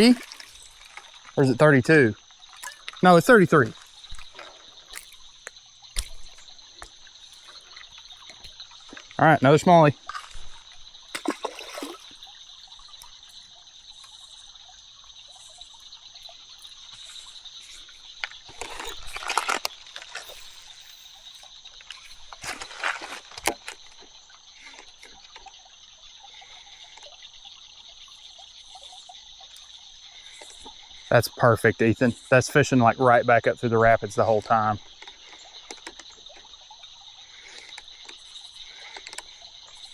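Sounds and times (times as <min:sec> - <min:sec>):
creek water over rapids: 0:00.0 - 0:13.8
insects trilling: 0:00.0 - 0:39.9.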